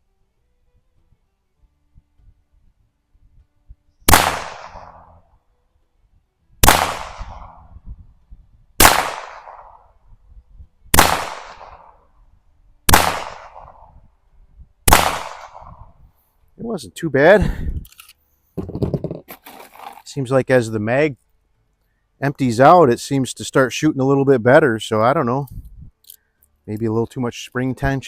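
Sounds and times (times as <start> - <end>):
pistol shots echoing: 4.1 - 5.1, 6.6 - 7.6, 8.8 - 9.8, 11.0 - 12.0, 12.9 - 13.8, 14.9 - 15.8.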